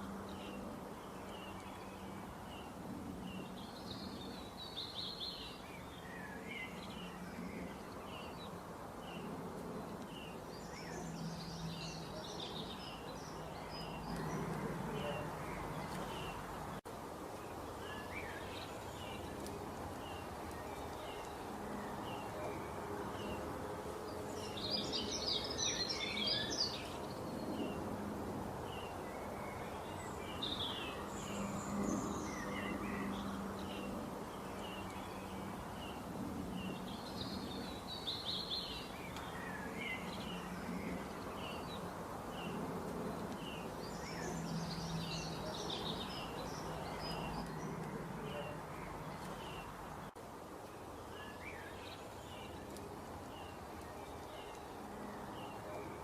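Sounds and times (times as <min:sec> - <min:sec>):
songbirds chirping and singing: 0:00.0 - 0:28.0, 0:28.6 - 0:50.2.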